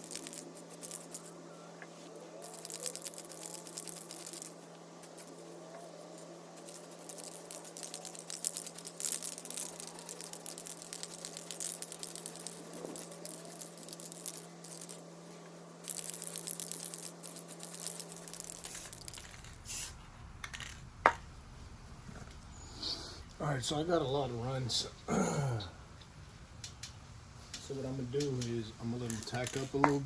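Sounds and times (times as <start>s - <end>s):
spray can rattle ball clicks: 0.0s - 1.3s, 2.4s - 5.4s, 6.2s - 15.0s, 15.8s - 19.6s, 28.2s - 30.0s
spray hiss: 19.6s - 20.0s.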